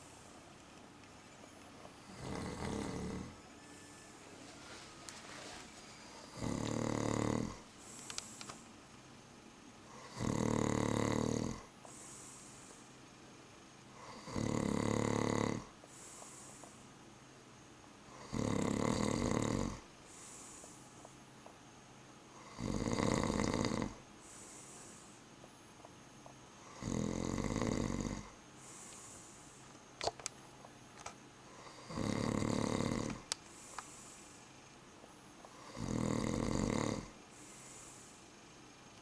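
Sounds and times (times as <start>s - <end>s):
quiet breaths: 0.0s - 39.0s
man snoring loudly: 2.0s - 3.4s, 6.1s - 7.6s, 9.9s - 11.7s, 14.0s - 15.7s, 18.1s - 19.8s, 22.4s - 24.0s, 26.6s - 28.4s, 31.6s - 33.2s, 35.6s - 37.8s.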